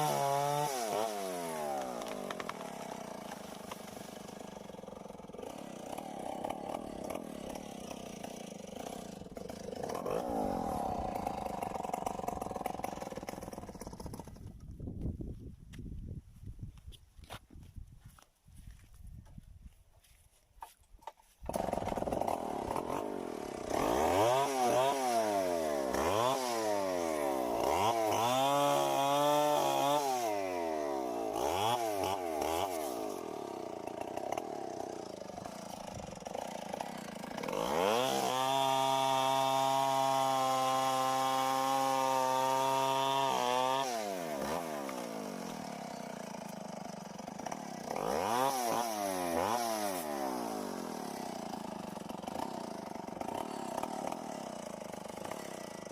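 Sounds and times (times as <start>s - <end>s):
chainsaw revving: 0.0s - 14.7s, 21.4s - 55.9s.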